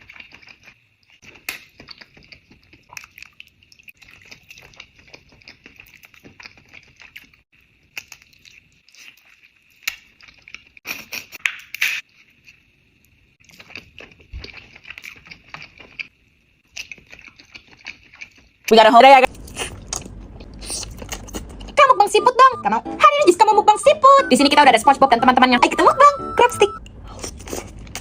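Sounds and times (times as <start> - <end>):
shells cracking while eating: 0.0 - 12.5, 13.4 - 18.7.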